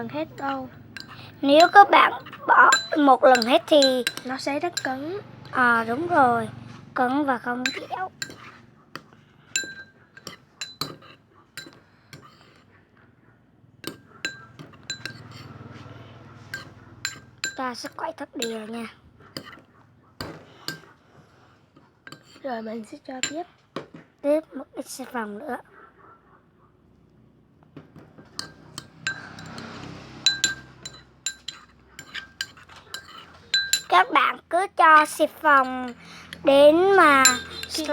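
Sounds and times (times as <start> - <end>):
stirrer clinking against container: 0.0 - 6.0, 7.0 - 12.7, 13.8 - 18.7, 19.3 - 20.9, 22.0 - 22.4, 23.2 - 23.5, 28.2 - 34.1, 34.9 - 37.9.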